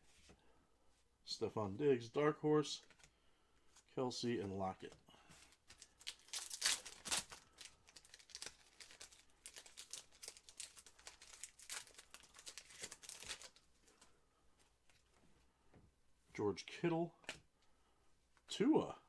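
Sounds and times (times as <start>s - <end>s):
card wrappers crinkling and rustling: 2.8s - 3.9s, 4.7s - 14.2s.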